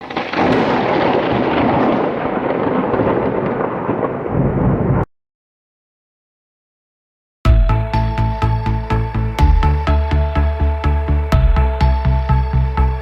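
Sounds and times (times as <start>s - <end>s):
thunder rumbling: 0.0s - 5.1s.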